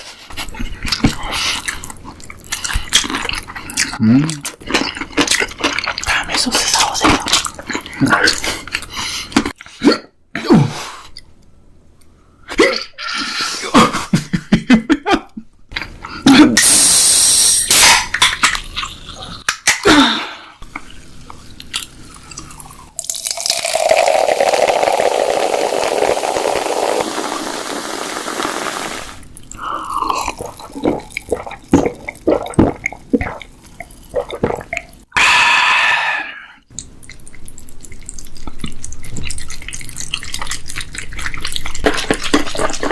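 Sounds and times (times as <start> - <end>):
wet chewing: 0.8 - 7.8, 36.8 - 42.9
steady rushing hiss: 25.6 - 29.2.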